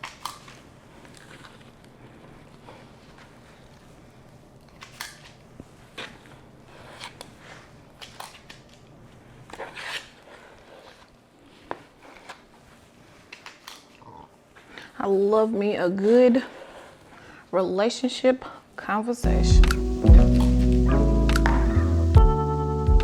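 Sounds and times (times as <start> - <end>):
faint steady hum: 18.4 - 23.0.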